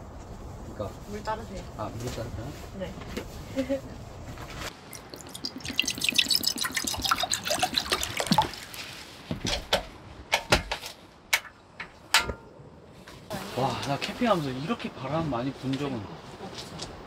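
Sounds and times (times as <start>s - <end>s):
water pouring and gurgling: 4.7s - 8.9s.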